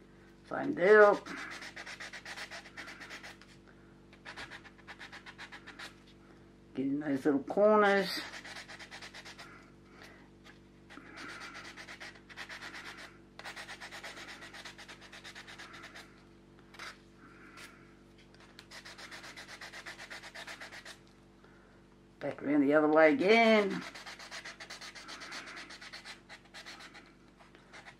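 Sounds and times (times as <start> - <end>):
wet sandpaper rubbing resin: 1.0 - 3.4, 8.1 - 9.4, 11.2 - 16.0, 18.6 - 21.0, 23.6 - 27.0.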